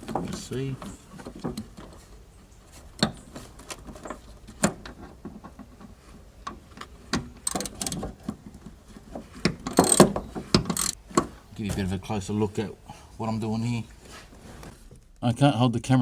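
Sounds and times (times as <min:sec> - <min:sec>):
socket wrench ratchet clicking: 0:10.7 - 0:11.0.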